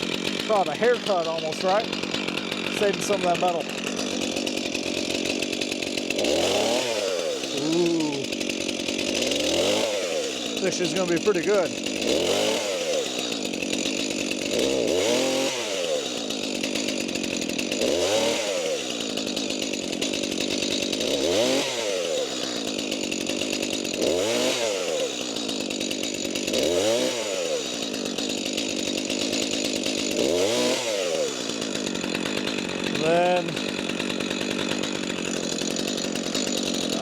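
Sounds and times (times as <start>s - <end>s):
chainsaw cutting wood: 0.0s - 37.0s.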